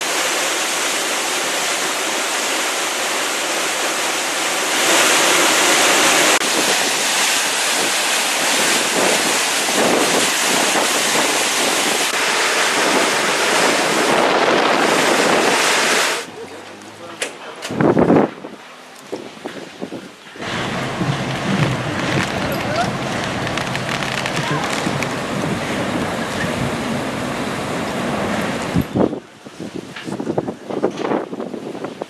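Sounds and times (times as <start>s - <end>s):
surf: 0.0s - 31.9s
hurricane wind: 0.0s - 32.0s
wind buffeting microphone: 6.2s - 15.9s, 17.7s - 32.0s.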